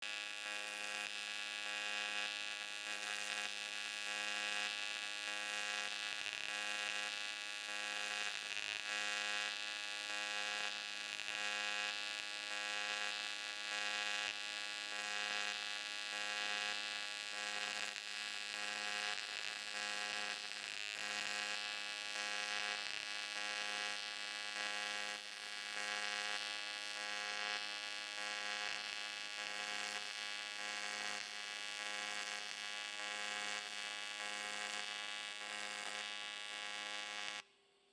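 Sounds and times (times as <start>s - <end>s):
welding arc buzzing and hissing: 24.6s - 37.4s.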